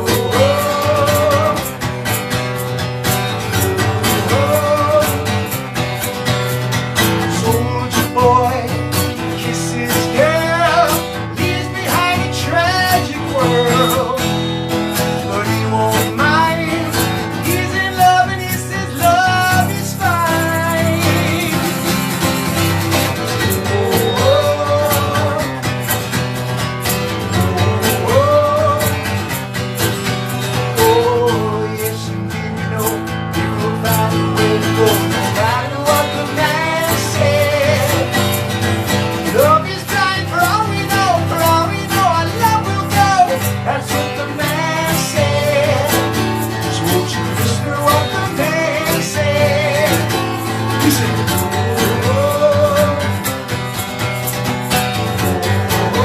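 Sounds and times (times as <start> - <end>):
guitar melody: 0.0 - 56.0
strummed guitar accompaniment: 0.0 - 56.0.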